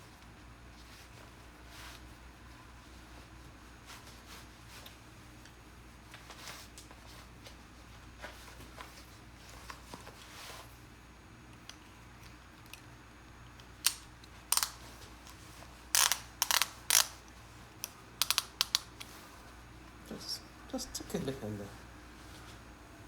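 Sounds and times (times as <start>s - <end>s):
ratchet buckle clicking: 13.6s - 17.2s, 17.8s - 19.1s.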